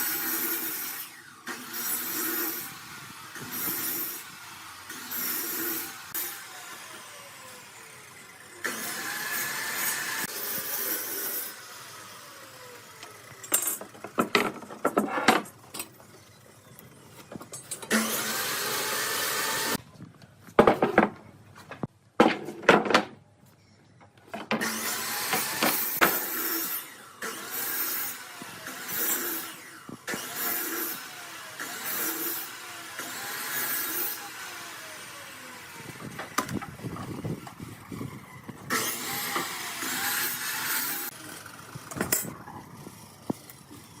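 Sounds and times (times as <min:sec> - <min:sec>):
power tool running: 0:00.0 - 0:14.6, 0:16.2 - 0:19.8, 0:24.5 - 0:44.0
knocks and clatter on wood: 0:13.8 - 0:15.5, 0:20.6 - 0:23.2.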